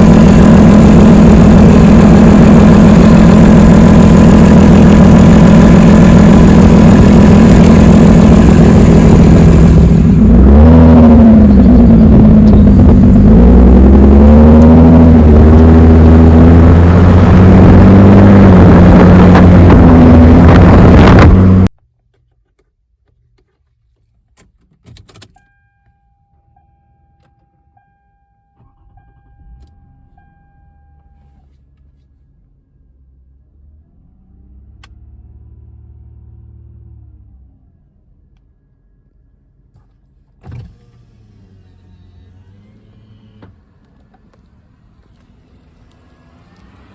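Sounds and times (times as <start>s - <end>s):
car engine revving: 0.0s - 21.7s.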